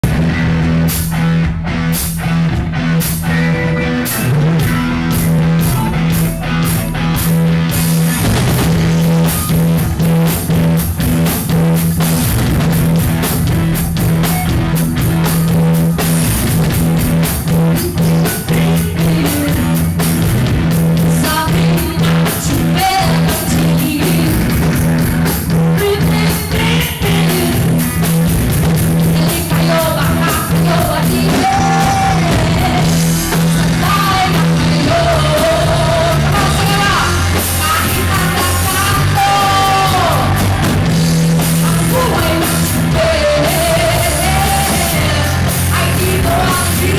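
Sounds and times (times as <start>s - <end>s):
live rock band playing: 0.0s - 46.9s
drum hits: 4.6s - 18.0s.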